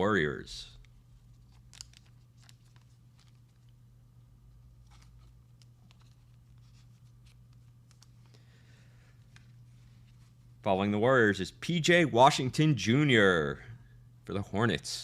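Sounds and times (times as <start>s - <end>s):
steady low hum: 0.0s - 15.0s
trading cards rustling: 0.8s - 3.8s, 4.7s - 10.3s.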